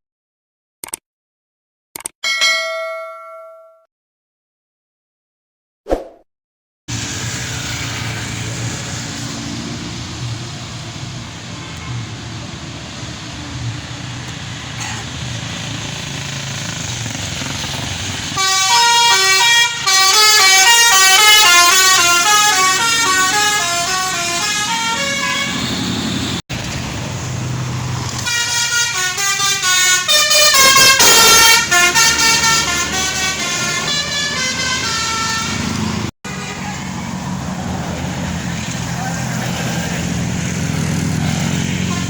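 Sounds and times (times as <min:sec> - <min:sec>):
bus engine running: 0:06.9 - 0:42.0
multi-tone bus horn tune: 0:18.3 - 0:26.4, 0:28.2 - 0:37.1, 0:41.7 - 0:42.0.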